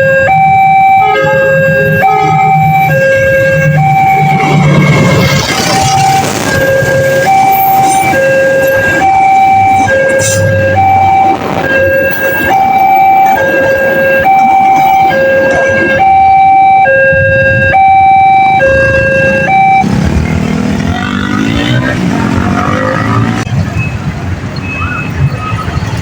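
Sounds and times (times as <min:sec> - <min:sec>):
two-tone electronic crossing alarm: 0:00.0 - 0:25.7
rumbling noise: 0:03.6 - 0:15.6.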